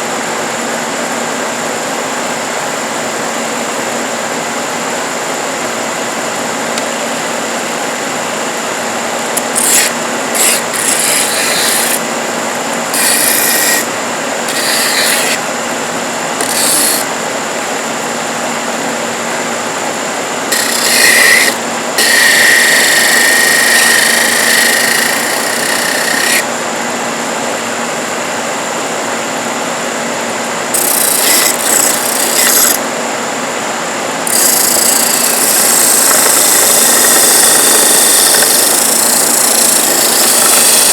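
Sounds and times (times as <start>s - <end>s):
disc sander running: 0.0s - 40.9s
wood rasping on sanding disc: 9.4s - 12.0s, 12.9s - 15.5s, 16.4s - 17.1s, 20.5s - 26.4s, 30.8s - 32.8s, 34.3s - 40.9s.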